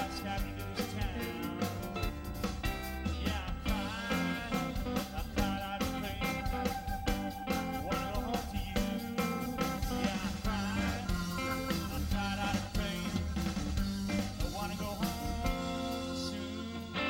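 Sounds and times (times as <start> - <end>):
steady drum beat: 0.0 - 16.3
bass: 0.0 - 17.0
electric guitar lead: 0.0 - 17.0.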